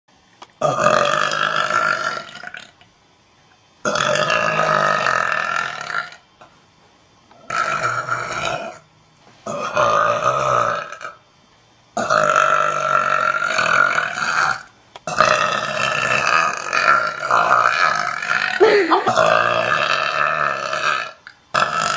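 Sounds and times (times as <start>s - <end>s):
woman burping: 18.3s - 20.3s.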